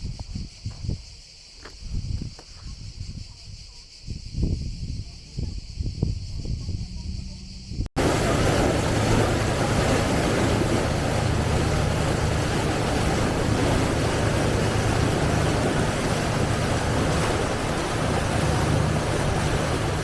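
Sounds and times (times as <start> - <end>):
rush of wind and water: 7.9 - 20.0
boat engine humming: 8.0 - 20.0.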